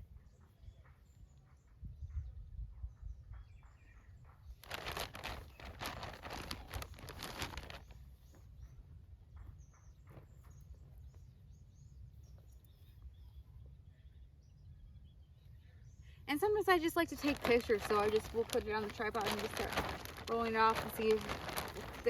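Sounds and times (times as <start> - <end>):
low outdoor rumble: 4.6 - 7.9, 16.7 - 22.0
rustling and handling noise: 4.6 - 8.1, 16.8 - 22.0.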